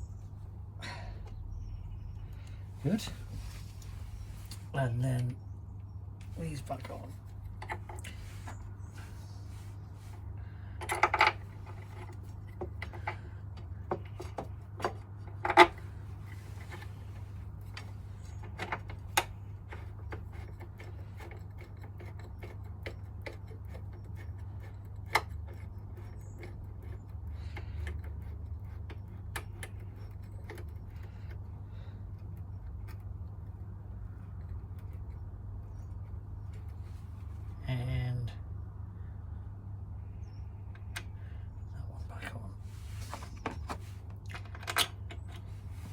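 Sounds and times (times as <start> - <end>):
steady low hum: 0.0 - 45.9
tools clicking and knocking: 10.8 - 15.8, 17.7 - 31.5.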